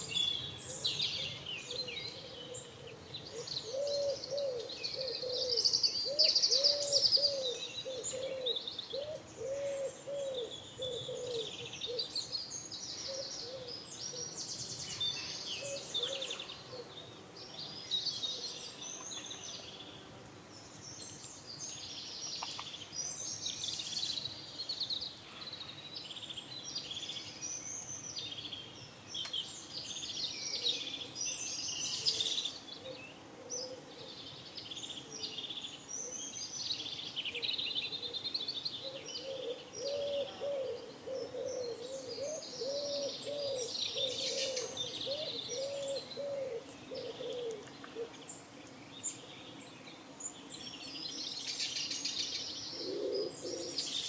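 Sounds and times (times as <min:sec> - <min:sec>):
songbirds chirping and trilling: 0:00.0 - 0:54.0
pigeon cooing: 0:01.9 - 0:12.1, 0:38.9 - 0:48.2, 0:52.8 - 0:53.8.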